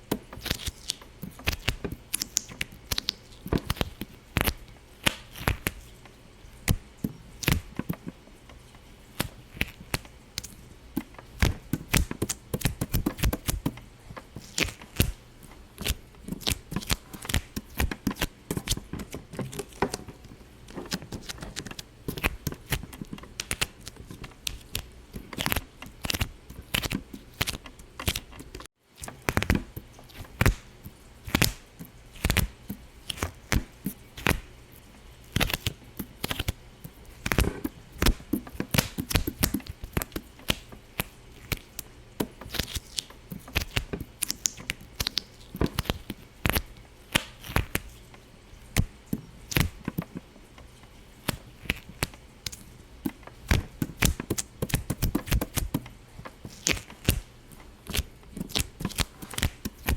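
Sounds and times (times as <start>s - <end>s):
sharp irregular pops and clicks: 9.2s - 13.8s, 37.2s - 47.8s, 51.2s - 57.3s.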